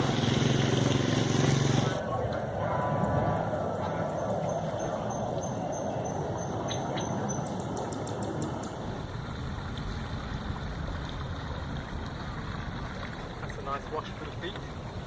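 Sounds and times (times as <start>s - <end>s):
water churning: 0.0s - 2.0s, 8.6s - 15.0s
wind rumble on microphone: 1.8s - 15.0s.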